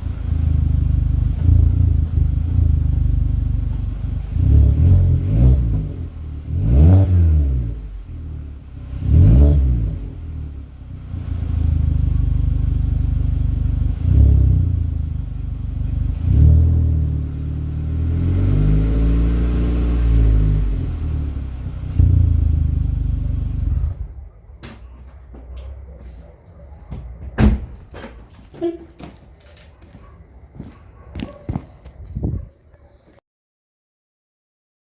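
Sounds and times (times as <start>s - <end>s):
car engine revving: 0.0s - 24.2s.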